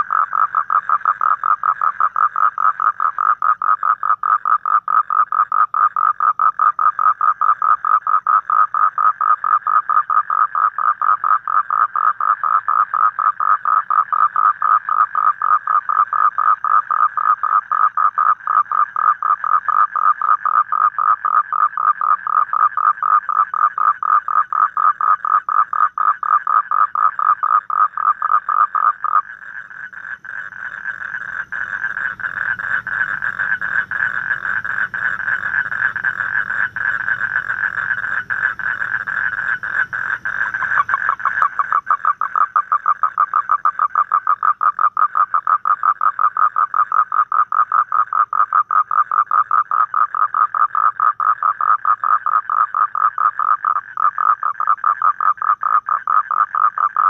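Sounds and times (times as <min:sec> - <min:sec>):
toads croaking: 0:00.0 - 0:57.0.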